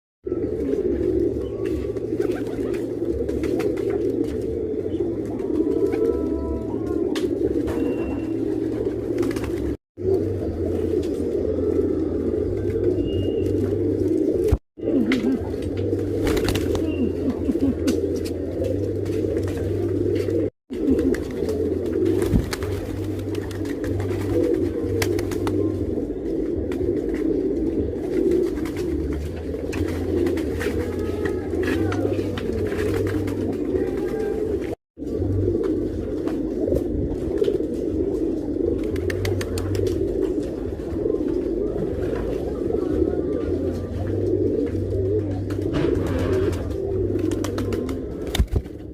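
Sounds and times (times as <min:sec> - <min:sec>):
pigeons cooing: 0:00.2 - 0:48.9.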